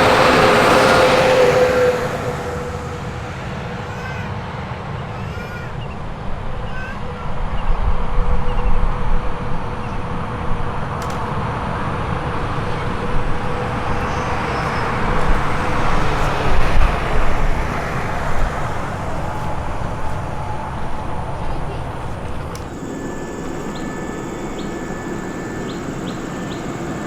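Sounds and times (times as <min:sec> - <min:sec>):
jet engines passing: 0:00.0 - 0:27.0.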